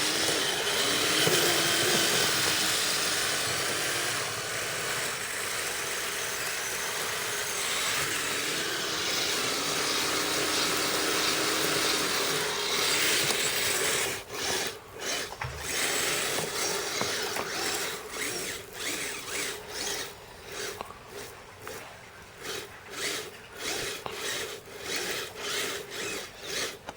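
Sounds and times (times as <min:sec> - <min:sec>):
toy snowcat motors and tracks grinding: 0:00.0 - 0:26.9.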